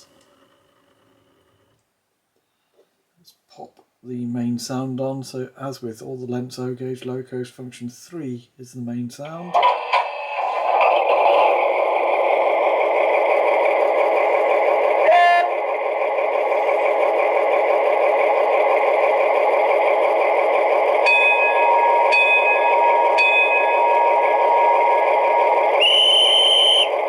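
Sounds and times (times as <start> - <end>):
model locomotive engine sound: 0.0 - 1.8, 9.2 - 27.0
thin steady whine: 9.5 - 27.0.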